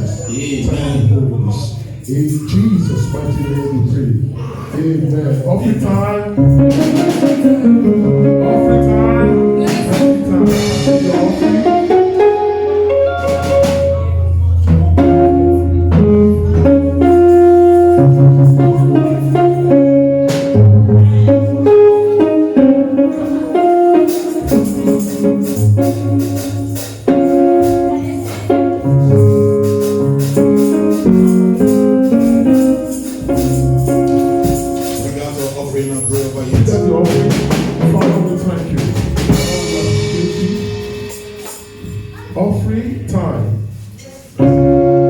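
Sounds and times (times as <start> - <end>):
keyboard chords: 5.2 - 45.0
bass line: 6.2 - 43.4
tambourine shaking: 23.2 - 36.6, 37.2 - 42.3.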